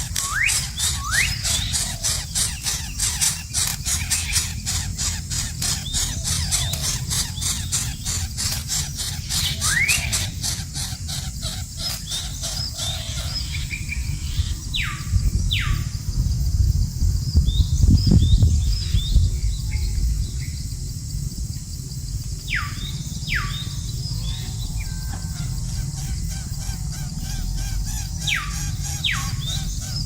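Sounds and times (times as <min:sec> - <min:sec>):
bird ticking chatter: 0:00.0 - 0:15.9, 0:22.5 - 0:30.0
low rumble: 0:13.2 - 0:30.0.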